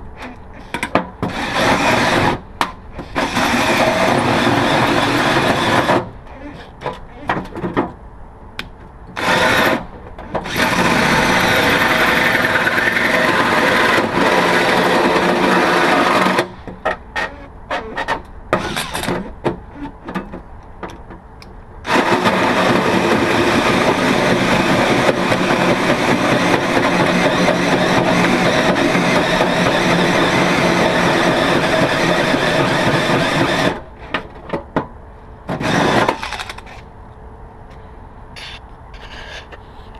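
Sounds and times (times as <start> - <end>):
power drill cutting sheet metal: 1.3 - 2.4, 3.0 - 6.1, 9.2 - 16.5, 18.6 - 19.2, 21.9 - 33.8, 35.5 - 36.6.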